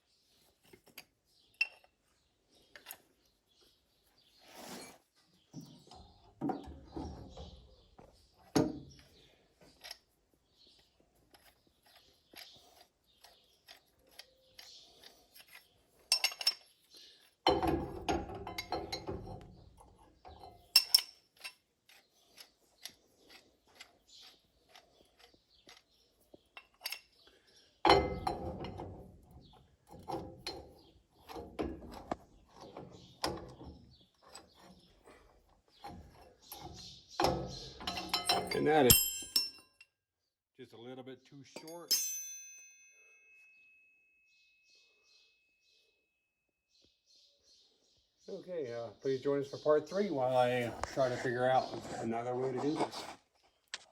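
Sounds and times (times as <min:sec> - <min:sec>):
metal tools clinking: 0:11.2 - 0:19.6, 0:20.3 - 0:23.0, 0:26.5 - 0:27.1, 0:35.9 - 0:39.9, 0:41.6 - 0:43.3
metal clattering and scraping: 0:14.6 - 0:22.1, 0:27.9 - 0:39.5.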